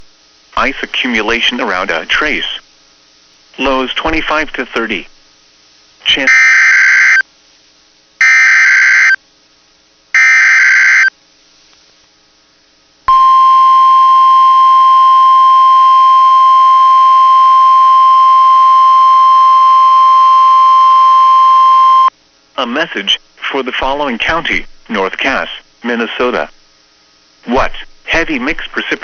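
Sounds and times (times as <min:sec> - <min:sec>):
steady warning alarm tone: 0:06.3 - 0:07.2, 0:08.2 - 0:09.2, 0:10.2 - 0:11.1, 0:13.1 - 0:22.1.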